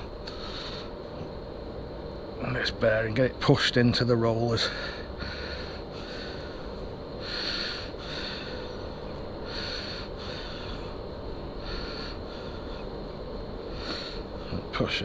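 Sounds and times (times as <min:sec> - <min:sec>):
person breathing through nose: 0:00.3 - 0:01.0, 0:04.7 - 0:11.0, 0:13.7 - 0:14.4.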